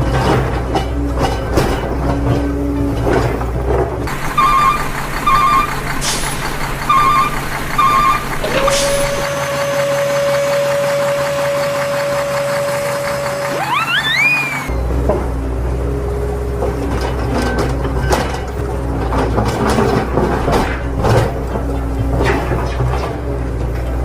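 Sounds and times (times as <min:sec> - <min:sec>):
heavy vehicle engine: 0:00.0 - 0:24.0
reversing alarm beeps: 0:04.3 - 0:05.9, 0:06.8 - 0:09.3.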